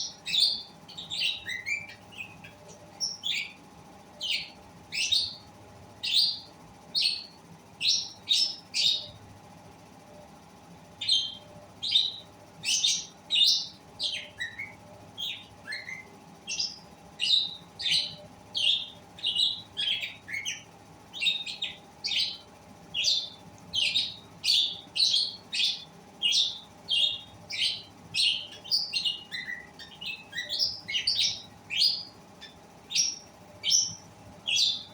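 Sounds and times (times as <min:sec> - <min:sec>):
lovebirds chirping: 0:00.0 - 0:03.6, 0:04.2 - 0:09.2, 0:11.0 - 0:34.9.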